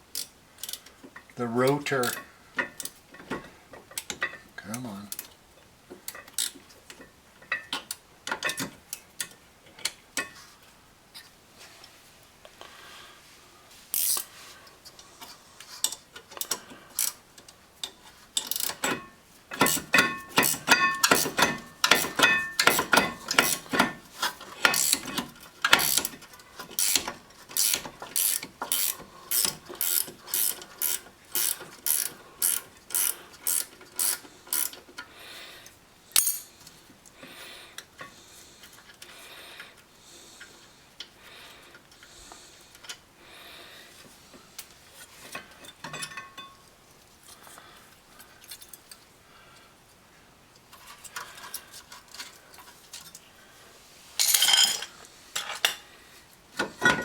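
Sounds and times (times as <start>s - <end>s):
ratchet wrench clicking: 0.1s - 0.9s, 13.9s - 14.3s, 15.9s - 17.2s, 18.4s - 19.0s, 19.6s - 23.8s, 24.6s - 26.2s, 26.8s - 35.1s.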